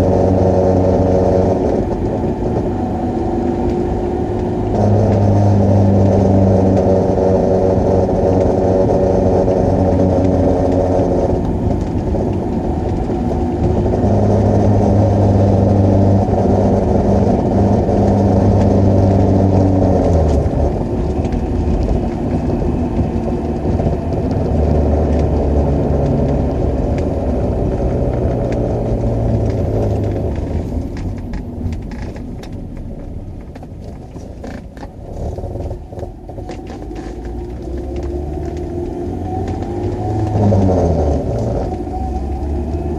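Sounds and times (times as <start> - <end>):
van engine droning vibration: 0.0 - 42.9.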